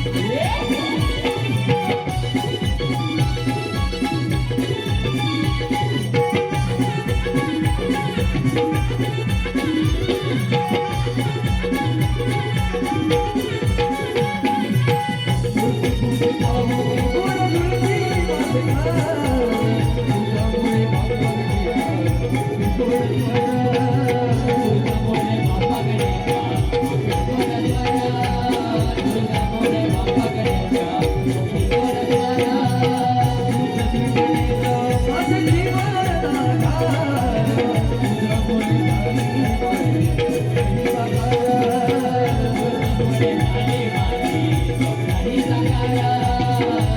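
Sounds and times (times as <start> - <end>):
steady drum beat: 0.0 - 46.9.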